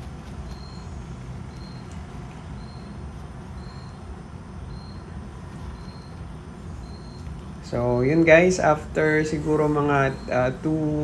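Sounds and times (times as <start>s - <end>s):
faint high-pitched chirp: 2.6s - 3.0s, 3.6s - 4.1s, 4.7s - 7.3s.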